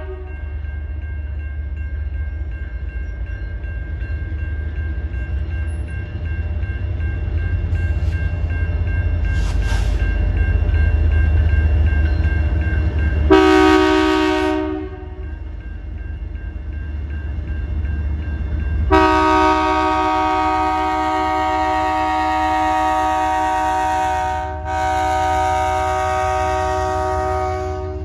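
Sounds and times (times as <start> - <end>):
train air horn chord: 0.0 - 0.3, 13.3 - 15.2, 18.9 - 28.0
train rumbling: 0.0 - 28.0.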